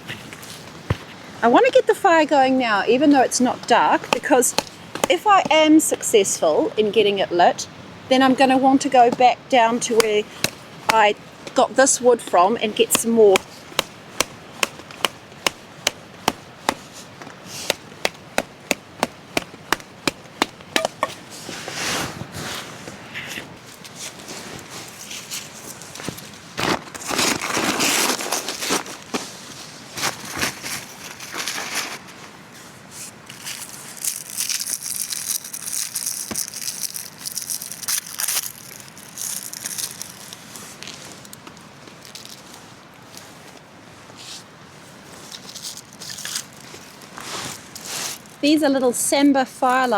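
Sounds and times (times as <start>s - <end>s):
wood being chopped: 4.0s - 5.6s, 10.0s - 11.6s, 12.8s - 21.2s
crinkling and crackling: 8.8s - 32.4s, 33.2s - 44.4s, 45.0s - 48.6s.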